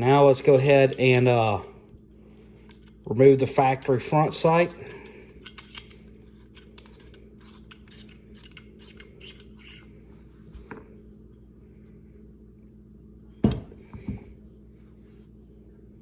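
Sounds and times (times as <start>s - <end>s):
faint steady hum: 0.0s - 16.0s
metal tools clicking and scraping: 0.3s - 1.6s, 2.4s - 10.0s.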